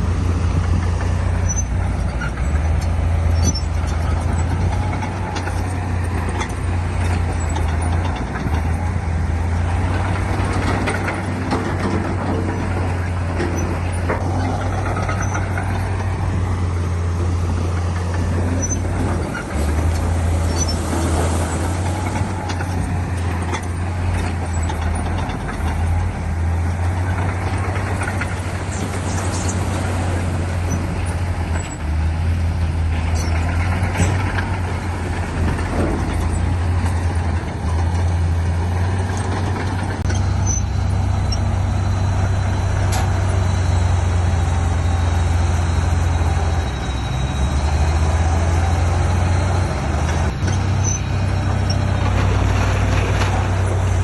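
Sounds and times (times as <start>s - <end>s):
heavy diesel engine under load: 0.0s - 54.0s
metal knocks and clanks: 0.5s - 44.2s.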